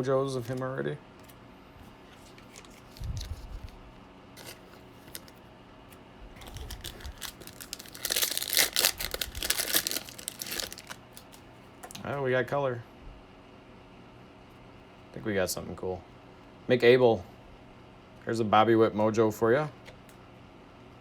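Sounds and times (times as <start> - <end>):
foil wrapper tearing and crinkling: 2.2 - 3.8, 4.4 - 5.4, 6.4 - 11.4.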